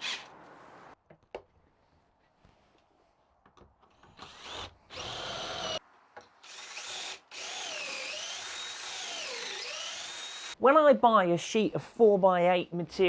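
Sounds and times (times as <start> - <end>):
power drill whining: 4.1 - 5.8, 6.4 - 10.6.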